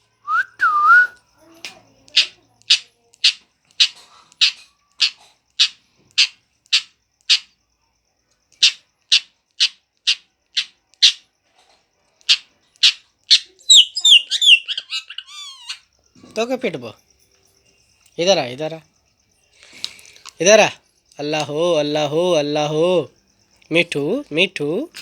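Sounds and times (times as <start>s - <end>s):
parrot whistling chirpy notes: 0.3s - 1.2s, 12.8s - 15.8s
parrot harsh high call: 13.3s - 15.8s.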